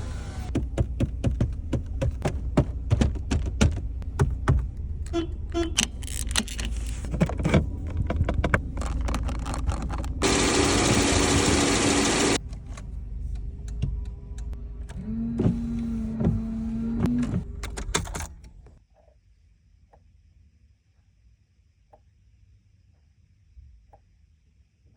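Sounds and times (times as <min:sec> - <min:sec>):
loud steady rush: 0:10.2 - 0:12.4
small electric motor whining: 0:10.2 - 0:12.4.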